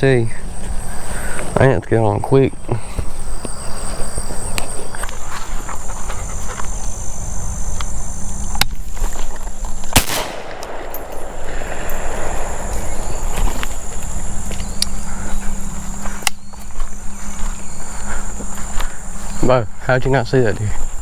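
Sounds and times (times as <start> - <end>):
high-pitched insect buzz: 0.4 - 10.0, 10.8 - 21.0
shotgun shot: 9.9 - 13.5.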